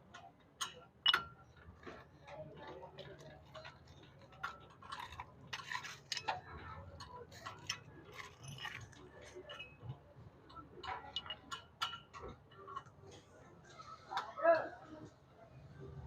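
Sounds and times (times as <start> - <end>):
hand tools clicking and clinking: 0.1 - 2.4, 10.5 - 13.0.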